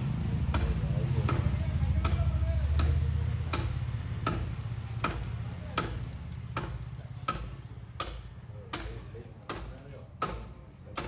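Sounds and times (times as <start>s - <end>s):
axe chopping tree trunk: 2.8s - 10.5s.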